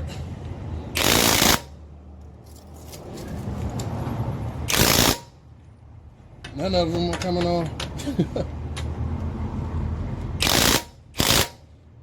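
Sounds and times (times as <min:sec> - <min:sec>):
impact wrench hammering: 0:10.4 - 0:11.7.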